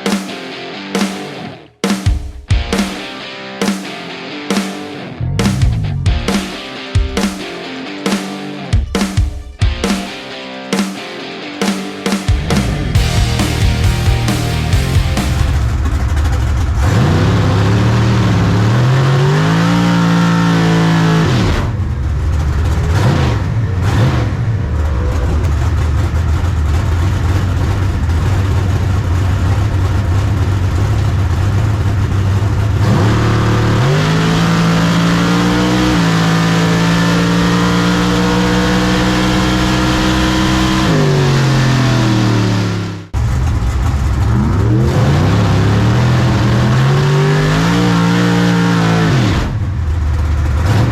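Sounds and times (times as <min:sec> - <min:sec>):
drag racing car engines: 0:12.4 - 0:50.9.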